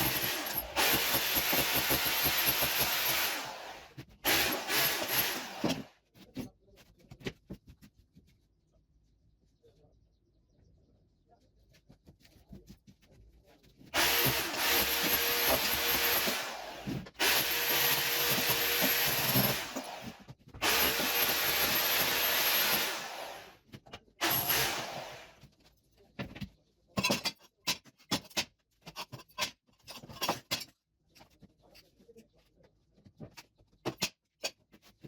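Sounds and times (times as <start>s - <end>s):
electric power tool running: 0.0s - 5.8s, 14.0s - 23.6s, 24.2s - 25.3s.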